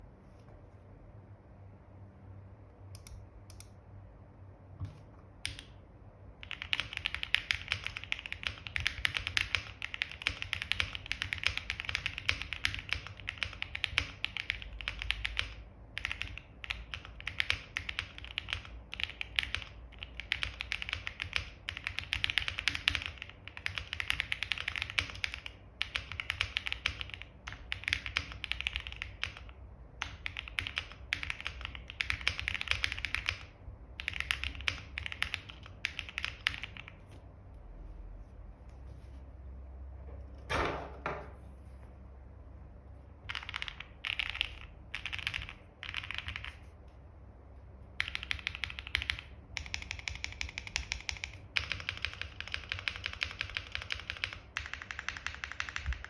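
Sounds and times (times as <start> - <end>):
mechanical keyboard typing: 5.4 - 5.8, 6.4 - 37.0, 43.3 - 46.7, 48.0 - 56.0.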